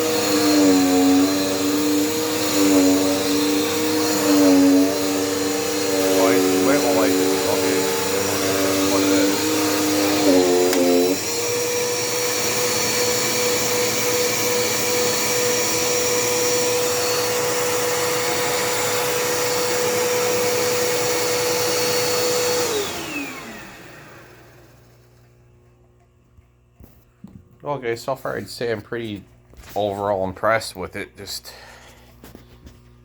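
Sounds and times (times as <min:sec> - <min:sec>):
vacuum cleaner motor whine: 0:00.0 - 0:25.6.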